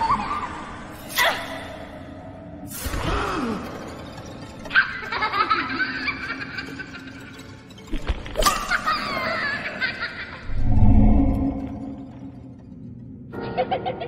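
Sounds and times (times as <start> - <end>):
eerie cackling laughter: 0.0 - 1.0, 3.3 - 7.7, 8.4 - 11.2, 13.3 - 14.0
spooky ambience: 0.0 - 14.0.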